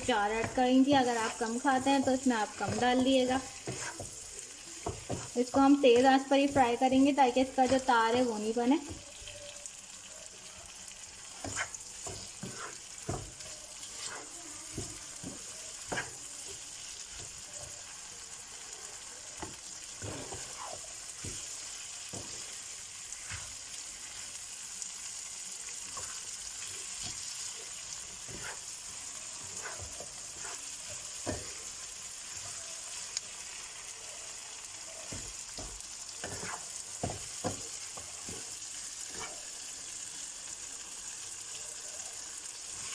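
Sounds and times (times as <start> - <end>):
spoon scraping and knocking pan: 0.0 - 9.2, 11.2 - 17.9, 19.4 - 24.4, 25.6 - 33.2, 34.9 - 39.8
okra sizzling in a pan: 0.0 - 42.9.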